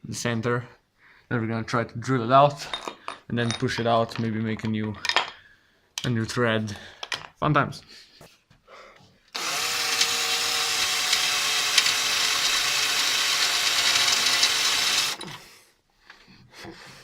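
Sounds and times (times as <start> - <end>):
electric drill drilling: 9.4 - 15.4.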